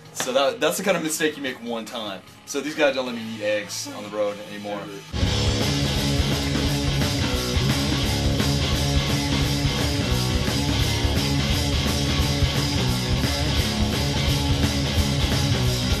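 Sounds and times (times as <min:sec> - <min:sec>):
strummed guitar chords: 0:05.1 - 0:16.0
driving drum beat: 0:05.2 - 0:16.0.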